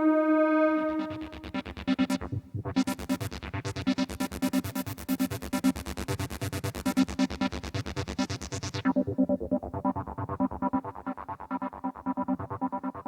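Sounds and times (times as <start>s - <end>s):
synthesizer sequenced bright notes: 0.0s - 5.8s.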